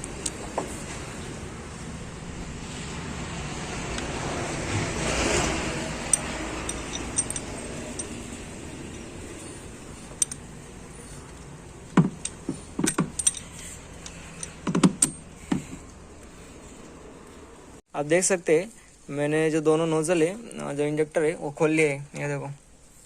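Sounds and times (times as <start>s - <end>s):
steady background noise: 0.0s - 23.0s
metal hand tools clinking: 6.0s - 15.6s.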